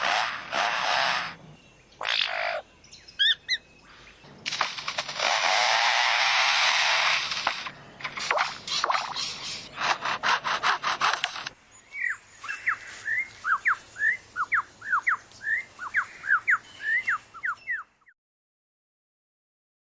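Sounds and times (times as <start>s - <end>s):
lyrebird rasping like chainsaw: 0.0s - 2.6s, 4.4s - 11.6s
bird whistling sliding notes: 5.9s - 10.0s.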